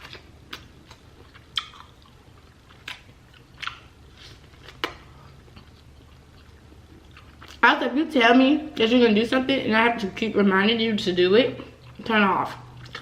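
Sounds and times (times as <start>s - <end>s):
chewing: 0.0s - 7.6s, 11.6s - 13.0s.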